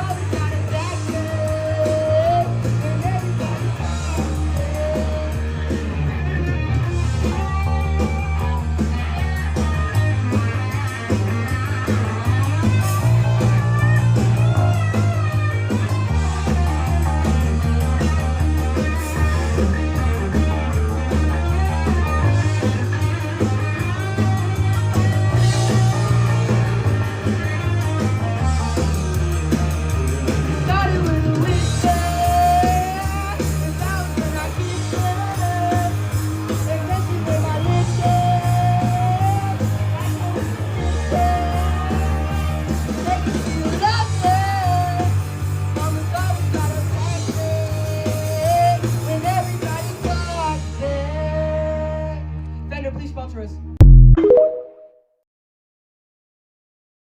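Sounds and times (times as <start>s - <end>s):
electric guitar: 0.0s - 52.7s
drums: 0.0s - 54.7s
sustained bass notes: 53.8s - 55.0s.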